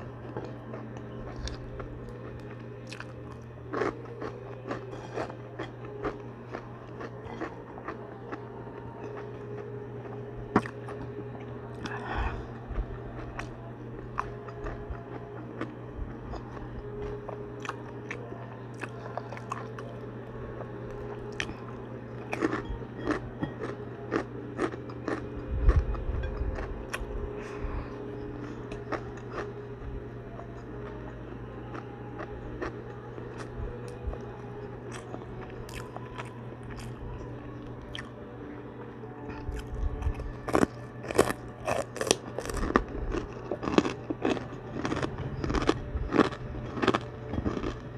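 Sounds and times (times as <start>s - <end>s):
crunchy chewing: 0.0s - 38.2s, 39.2s - 47.9s
steady low hum: 0.0s - 47.9s.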